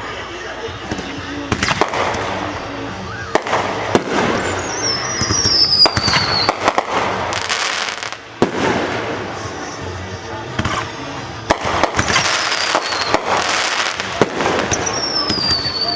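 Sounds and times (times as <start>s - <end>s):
high whistle gliding downward: 0.0s - 8.2s, 12.0s - 15.9s
firework crackling: 0.0s - 15.9s
firework shells bursting: 0.0s - 15.9s.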